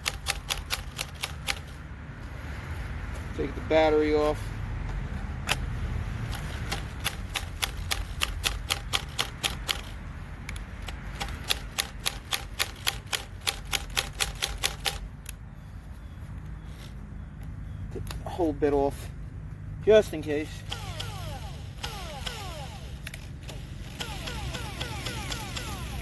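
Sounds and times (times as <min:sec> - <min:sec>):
drill chuck ratcheting clicks: 0:00.0 - 0:01.8, 0:06.3 - 0:15.4, 0:20.6 - 0:26.0.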